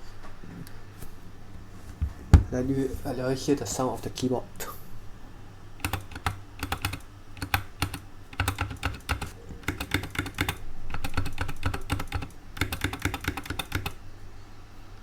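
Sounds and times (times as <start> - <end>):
mechanical keyboard typing: 5.8 - 14.0.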